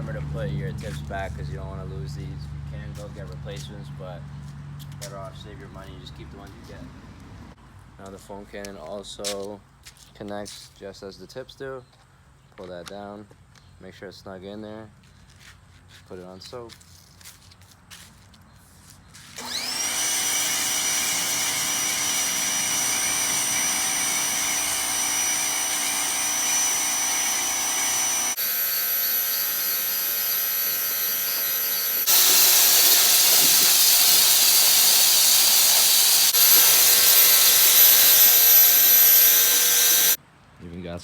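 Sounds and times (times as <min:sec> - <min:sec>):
electric pressure washer running: 0:19.4 - 0:40.2.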